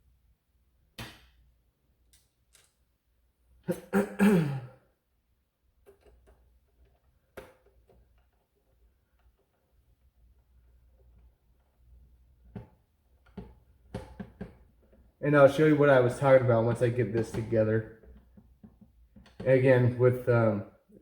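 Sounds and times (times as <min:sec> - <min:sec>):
person clearing throat: 0:03.7 - 0:04.8.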